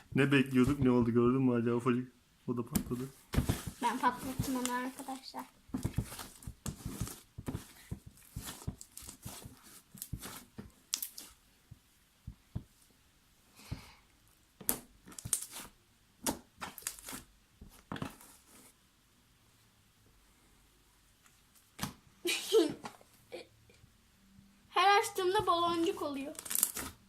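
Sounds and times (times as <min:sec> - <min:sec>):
slime crackling and popping: 0:05.9 - 0:11.4, 0:14.6 - 0:17.3, 0:26.3 - 0:27.0.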